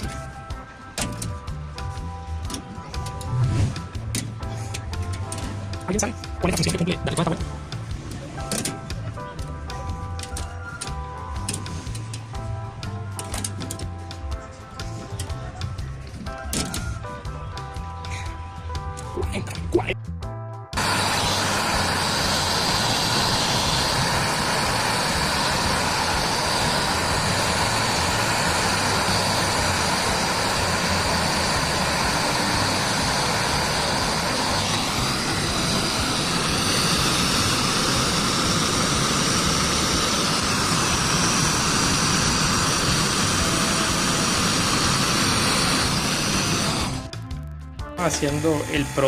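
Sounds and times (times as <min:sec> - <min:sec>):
vacuum pump running: 0:20.8 - 0:47.2, 0:48.0 - 0:49.0.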